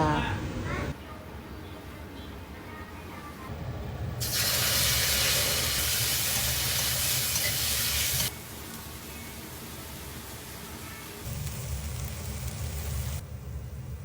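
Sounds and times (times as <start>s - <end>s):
water running: 4.2s - 13.2s.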